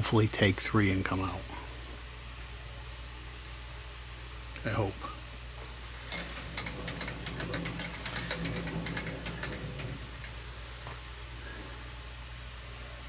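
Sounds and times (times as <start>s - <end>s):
machine humming: 4.5s - 12.2s.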